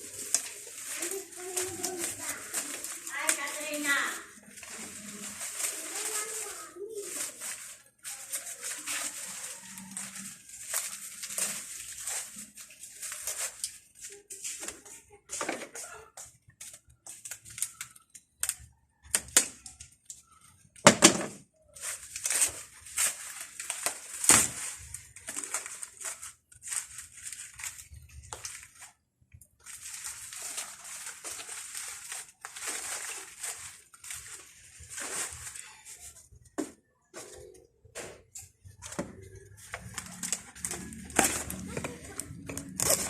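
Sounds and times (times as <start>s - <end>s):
leaves snapping: 0.0s - 13.8s, 21.9s - 28.9s
dry leaves crackling and rustling: 0.0s - 15.1s, 21.7s - 36.4s, 38.6s - 43.0s.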